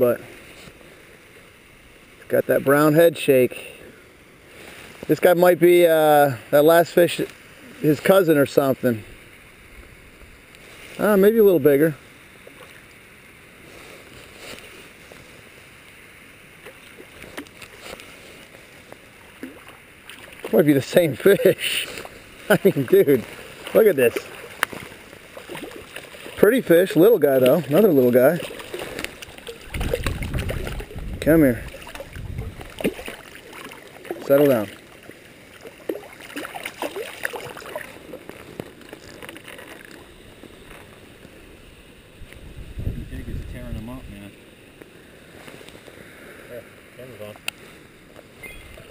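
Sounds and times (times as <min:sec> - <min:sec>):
flowing creek water: 0:00.0 - 0:48.9
small splashes and clicks: 0:12.4 - 0:12.9, 0:16.6 - 0:20.7, 0:21.8 - 0:31.0, 0:31.6 - 0:40.1.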